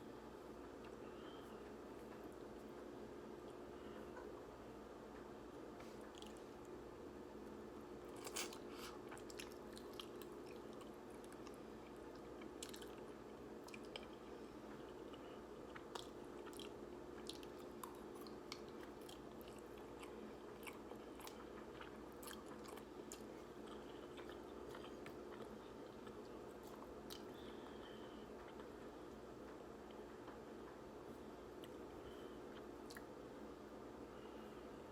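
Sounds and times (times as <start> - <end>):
faint steady hum: 0.0 - 34.9
chewing noodles: 8.1 - 28.7.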